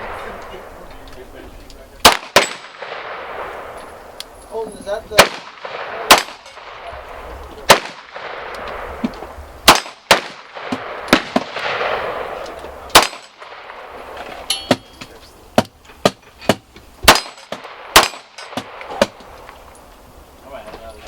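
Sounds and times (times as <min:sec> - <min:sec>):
pistol shots with echo: 0:02.0 - 0:04.0, 0:05.1 - 0:15.0, 0:15.6 - 0:19.2.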